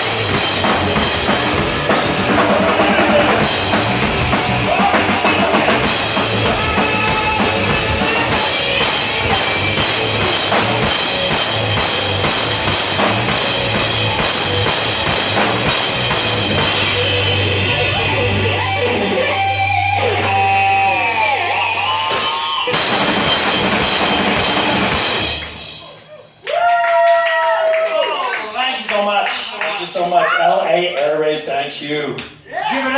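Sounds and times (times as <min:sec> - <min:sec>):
sliding bending guitar notes: 0:00.0 - 0:25.8
rock music: 0:00.0 - 0:26.1.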